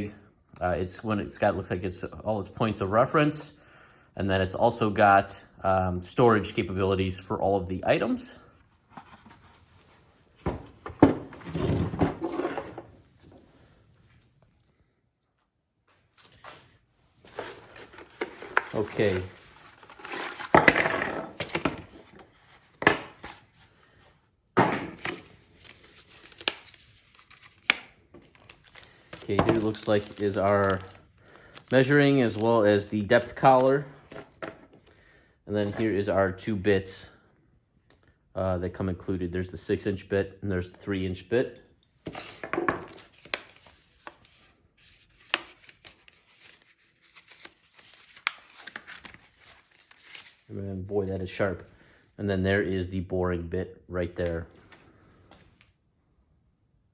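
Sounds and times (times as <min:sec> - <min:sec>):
pieces knocking and clattering: 0:20.4 - 0:21.8.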